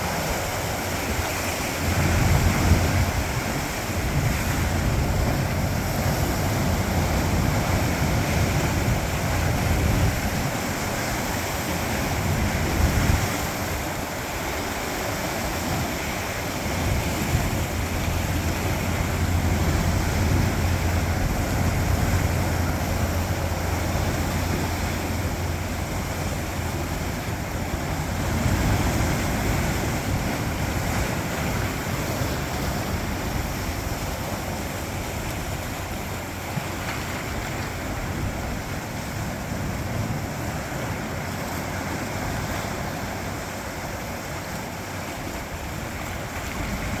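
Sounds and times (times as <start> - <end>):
sea surf washing over rocks: 0.0 - 47.0
wind rumble on microphone: 0.0 - 47.0.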